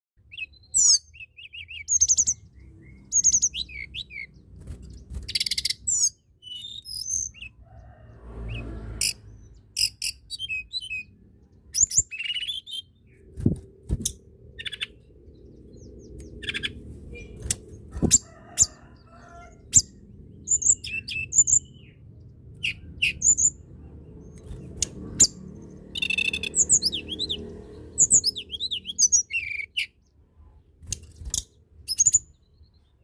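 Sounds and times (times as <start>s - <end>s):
bird chirping and whistling: 0.3s - 4.4s, 5.3s - 7.6s, 9.8s - 11.1s, 11.7s - 14.0s, 15.8s - 18.2s, 19.8s - 21.9s, 22.6s - 23.6s, 25.2s - 27.4s, 28.0s - 30.0s, 31.3s - 32.3s.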